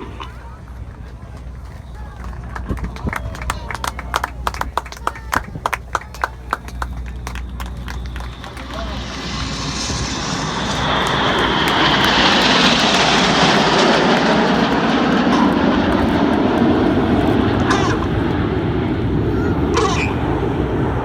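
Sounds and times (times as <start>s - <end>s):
jets flying past: 0.0s - 21.0s
whine falling in pitch: 5.3s - 21.0s.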